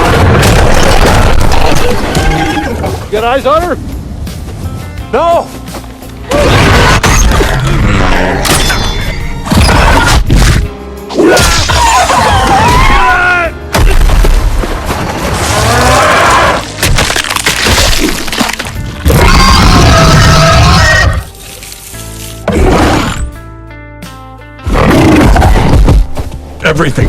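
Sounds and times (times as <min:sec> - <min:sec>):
crashes and breaking impacts: 0:00.0 - 0:02.3, 0:16.7 - 0:19.4
dramatic film score: 0:00.0 - 0:27.0.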